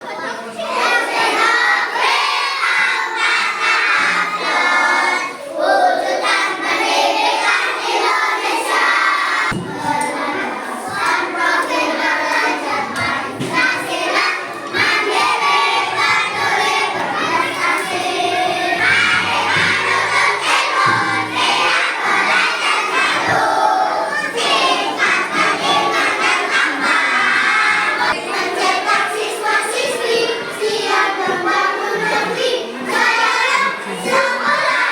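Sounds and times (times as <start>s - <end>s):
children's choir singing a march: 0.0s - 34.9s.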